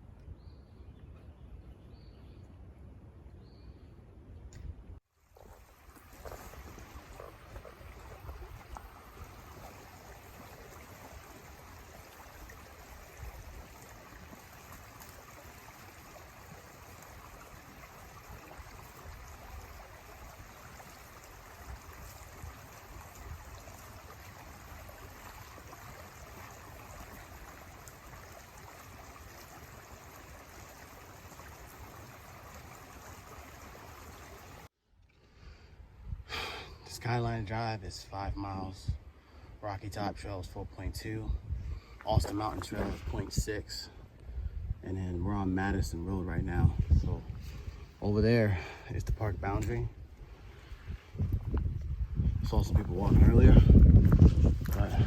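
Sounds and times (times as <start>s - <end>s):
creek water running: 5.0s - 34.7s, 39.3s - 44.1s, 44.9s - 55.0s
wind on microphone: 6.1s - 14.9s, 41.2s - 44.8s, 45.6s - 48.0s, 49.0s - 55.0s.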